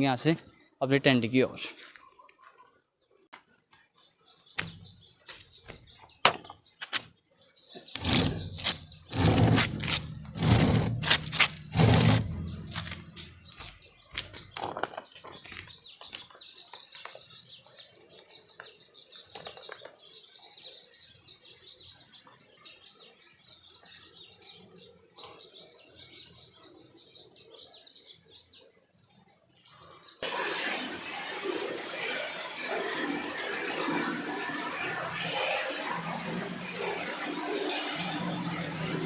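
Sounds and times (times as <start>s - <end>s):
birds chirping: 0.0s - 30.2s.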